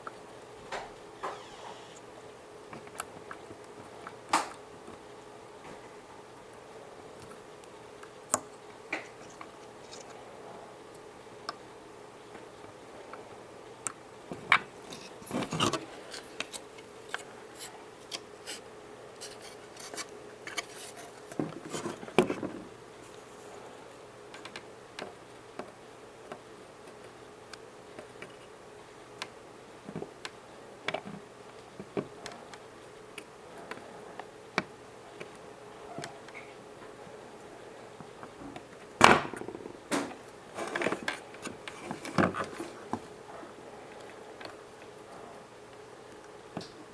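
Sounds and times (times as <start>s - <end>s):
faint steady hum: 0.0s - 46.9s
hands handling parts and tools: 19.2s - 22.4s.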